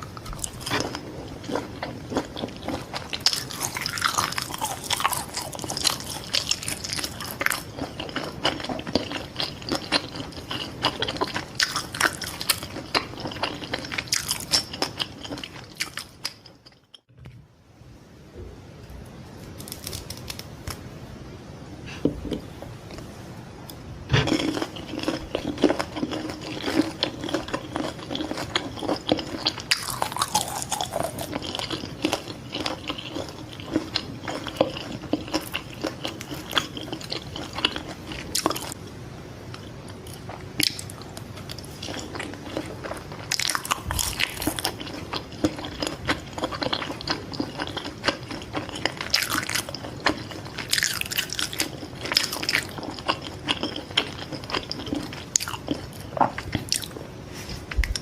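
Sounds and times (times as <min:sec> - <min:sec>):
biting and chewing: 0:00.0 - 0:17.1, 0:24.1 - 0:38.8, 0:39.9 - 0:57.0.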